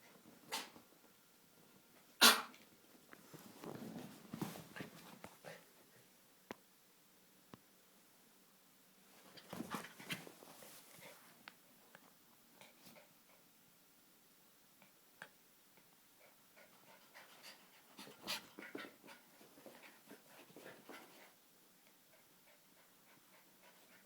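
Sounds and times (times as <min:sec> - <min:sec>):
dogs playing: 0:03.2 - 0:06.0, 0:09.2 - 0:11.3, 0:16.2 - 0:24.0.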